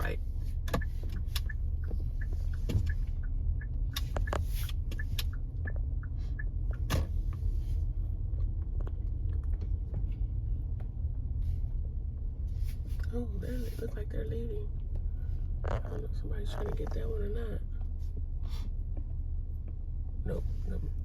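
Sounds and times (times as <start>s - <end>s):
low engine and tyre rumble: 0.0s - 21.0s
small clicks and knocks in car: 0.4s - 13.1s, 14.7s - 20.0s.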